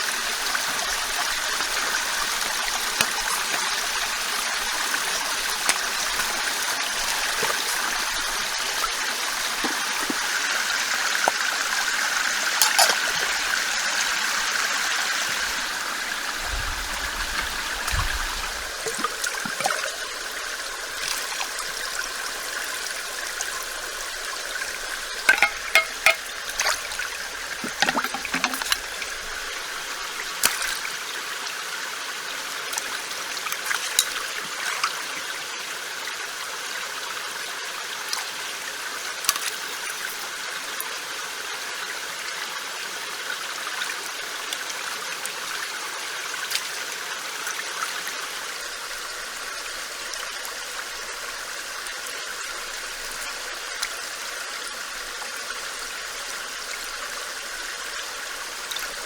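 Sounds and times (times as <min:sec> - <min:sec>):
stream running: 0:00.0 - 0:59.0
sharp clicks and knocks: 0:25.3 - 0:26.3.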